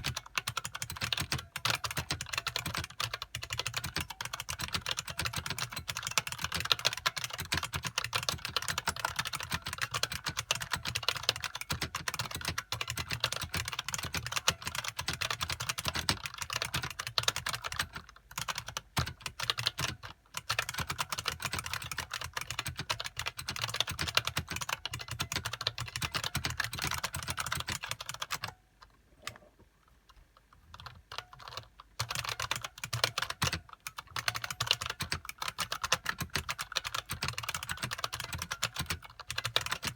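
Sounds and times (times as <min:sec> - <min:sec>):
keyboard keys clicking: 0:00.0 - 0:28.6, 0:30.7 - 0:39.9.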